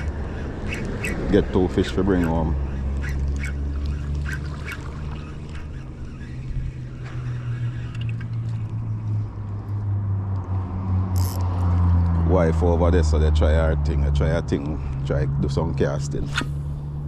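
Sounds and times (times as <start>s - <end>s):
engine humming steadily: 0.0s - 17.0s.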